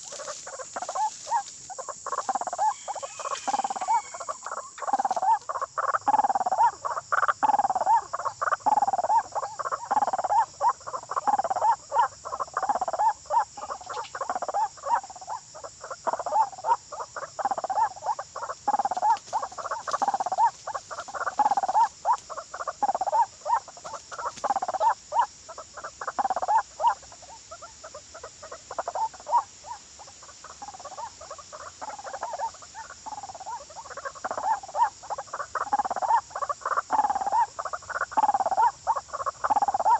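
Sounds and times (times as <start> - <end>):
steady high hiss: 0.0 - 7.0
waterhen croaking calls: 0.0 - 39.9.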